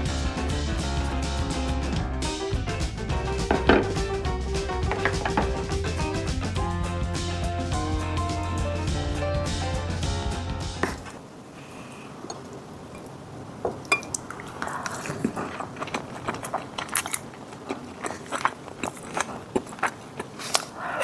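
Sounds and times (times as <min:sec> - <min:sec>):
crunching and chewing food: 0:00.0 - 0:06.6, 0:13.8 - 0:21.0.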